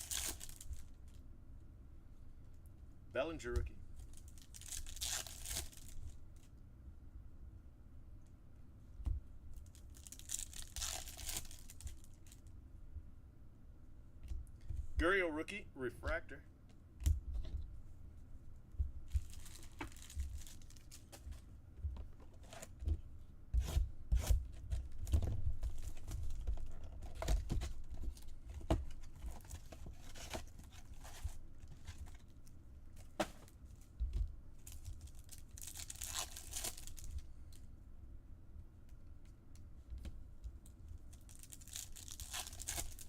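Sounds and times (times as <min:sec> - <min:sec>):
card wrappers tearing and crinkling: 0:00.0 - 0:00.9, 0:04.0 - 0:06.2, 0:09.6 - 0:12.4, 0:19.1 - 0:21.4, 0:24.2 - 0:32.4, 0:34.6 - 0:37.2, 0:41.2 - 0:43.0.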